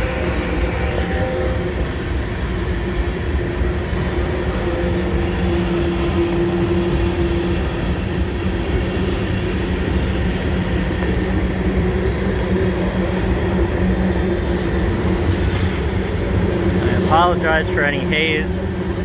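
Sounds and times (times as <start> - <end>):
train wheels rumbling on track: 0.0 - 19.0
high wheel squeal: 10.6 - 18.6.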